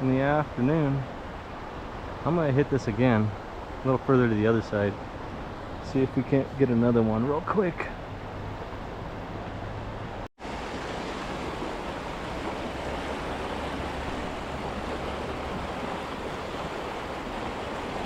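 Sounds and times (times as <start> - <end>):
river water rushing: 0.0 - 18.0.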